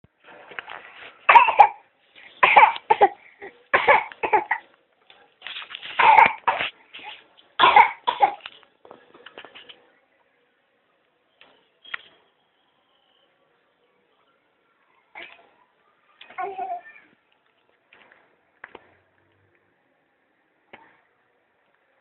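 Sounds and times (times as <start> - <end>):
child fake-coughing: 1.3 - 1.8, 3.8 - 4.7, 6.0 - 6.6.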